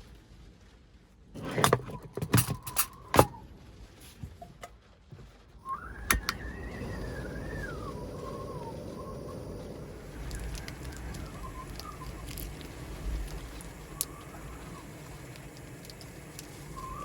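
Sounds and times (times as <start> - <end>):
wind and rain noise: 0.0 - 17.0
wind whistling around van: 5.6 - 17.0.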